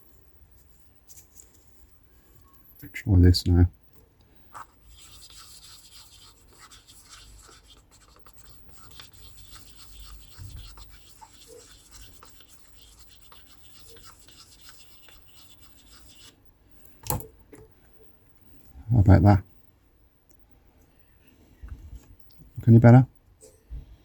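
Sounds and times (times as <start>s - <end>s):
screwdriver scratching metal dome: 4.6s - 16.4s.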